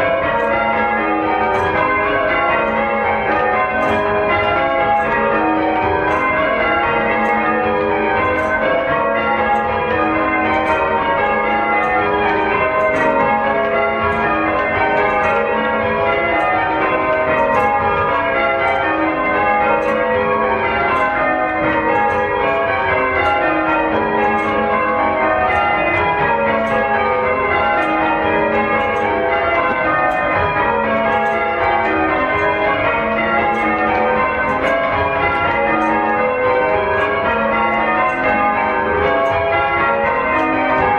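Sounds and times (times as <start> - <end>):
church bells ringing: 0.0 - 40.9.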